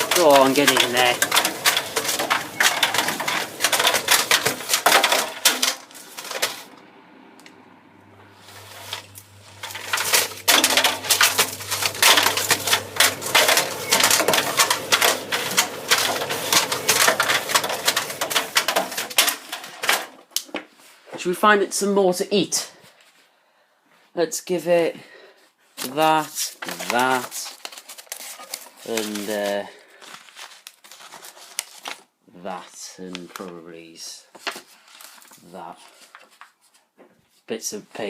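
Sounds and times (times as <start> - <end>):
low motor hum: 0.0 - 18.6
objects tumbling in dryer drum: 0.0 - 20.2, 26.6 - 27.5.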